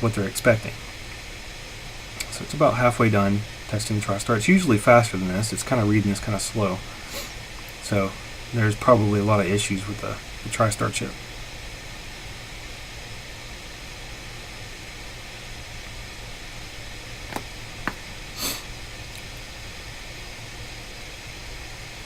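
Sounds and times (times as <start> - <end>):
background hiss: 0.0 - 22.0.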